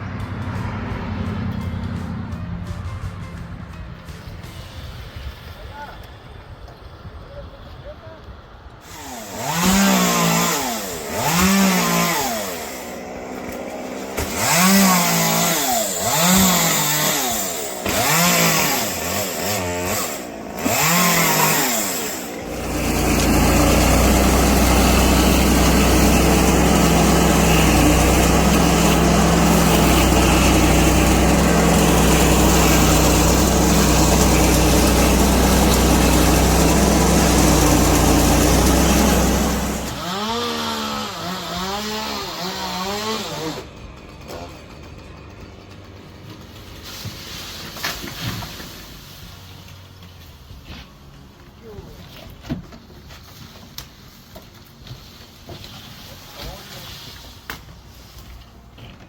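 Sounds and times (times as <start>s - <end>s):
chainsaw engine revving: 8.8s - 46.8s.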